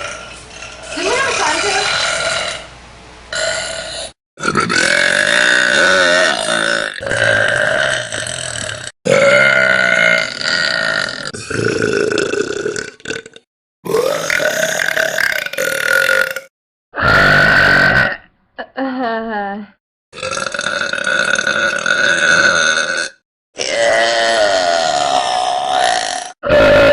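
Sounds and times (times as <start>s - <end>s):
long drawn-out burps: 0.0s - 2.7s, 3.3s - 18.7s, 20.1s - 26.9s.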